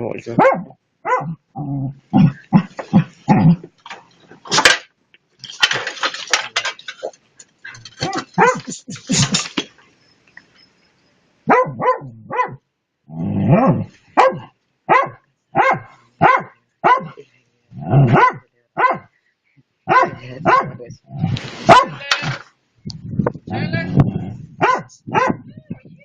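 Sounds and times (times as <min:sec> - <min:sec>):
dog barking: 0:00.3 - 0:01.4, 0:08.1 - 0:08.8, 0:11.4 - 0:12.6, 0:13.6 - 0:17.2, 0:18.0 - 0:19.1, 0:19.9 - 0:20.8, 0:21.6 - 0:22.0, 0:24.6 - 0:25.5.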